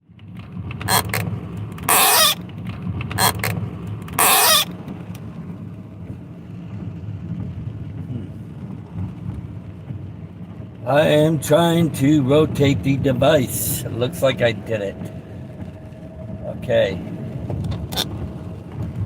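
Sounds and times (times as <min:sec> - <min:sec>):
car cabin hum: 0:00.2 - 0:19.0
phone scraping against microphone: 0:00.8 - 0:01.2, 0:01.8 - 0:02.4, 0:03.2 - 0:03.6, 0:04.2 - 0:04.7.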